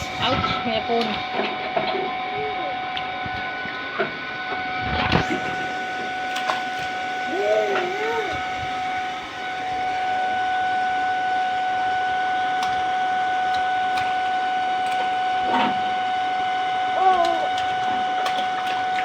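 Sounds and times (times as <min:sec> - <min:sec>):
machine hum with whine: 0:00.0 - 0:19.0
light taps or splashes: 0:06.1 - 0:07.0, 0:12.5 - 0:15.9, 0:17.0 - 0:19.0
baby vocalizing: 0:07.3 - 0:08.4, 0:17.0 - 0:17.6.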